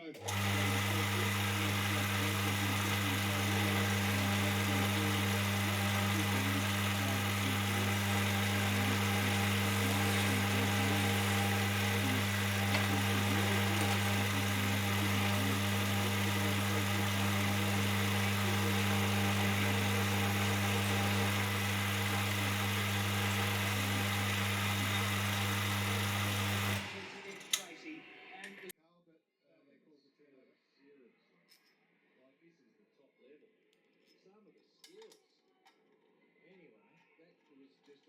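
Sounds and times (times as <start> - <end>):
motor running steadily: 0.0 - 27.6.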